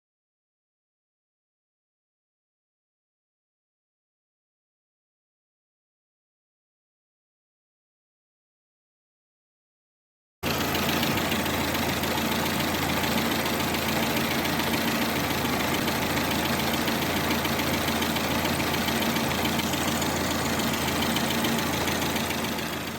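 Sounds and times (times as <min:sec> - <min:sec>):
car engine idling with knock: 0:10.4 - 0:22.9.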